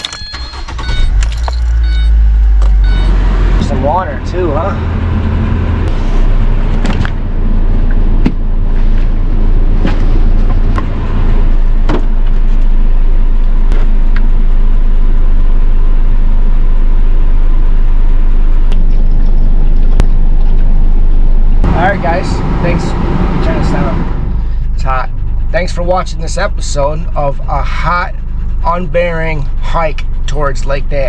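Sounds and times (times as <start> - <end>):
engine idling: 0.0 - 11.0, 21.6 - 31.0
air conditioning blowing hard: 21.6 - 25.1.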